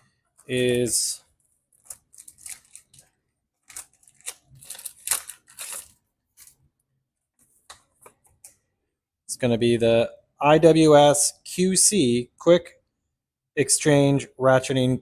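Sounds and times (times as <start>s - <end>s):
rustling crinkling packaging: 0.4s - 6.7s.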